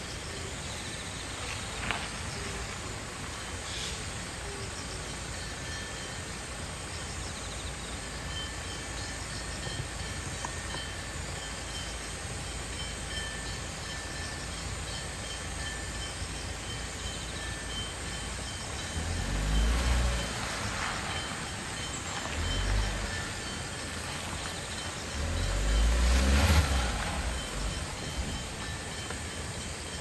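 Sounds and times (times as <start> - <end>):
insects chirping: 0.0 - 30.0
low rumble: 18.1 - 29.7.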